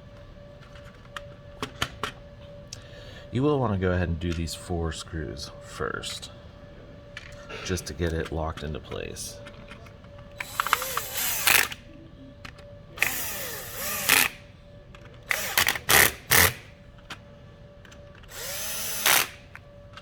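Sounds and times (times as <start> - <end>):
electric screwdriver whirring: 10.3 - 11.8, 13.0 - 14.4, 15.2 - 16.8, 17.9 - 19.6.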